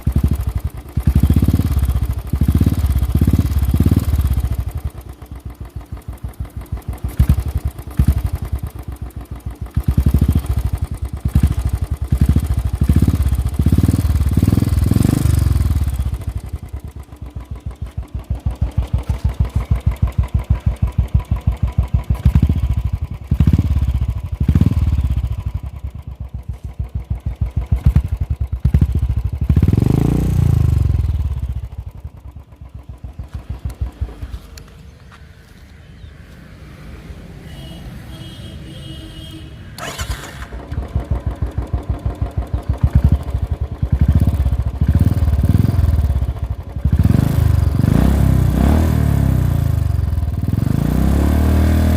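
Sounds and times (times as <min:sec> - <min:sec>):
motorcycle thumping at idle: 0:00.0 - 0:35.2
motorcycle throttle blips: 0:00.0 - 0:36.1.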